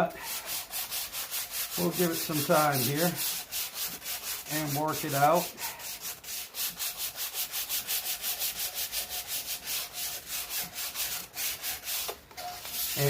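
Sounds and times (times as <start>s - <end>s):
sandpaper rubbing cast iron: 0.0s - 13.0s.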